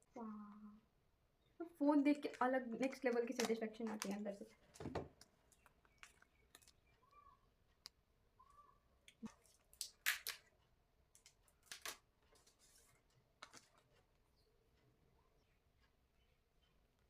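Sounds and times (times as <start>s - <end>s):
packaging clicks and rustles: 2.3s - 6.9s, 11.2s - 14.1s.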